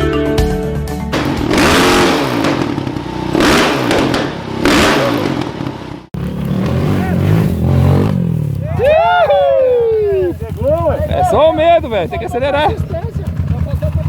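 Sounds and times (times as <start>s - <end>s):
music: 0.0s - 1.5s
another motorcycle engine: 1.1s - 14.0s
motorcycle engine revving: 1.1s - 14.0s.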